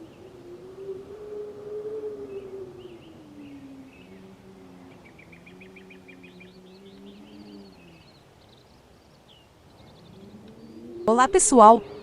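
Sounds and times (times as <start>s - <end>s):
small birds chirping and trilling: 0.0s - 12.0s.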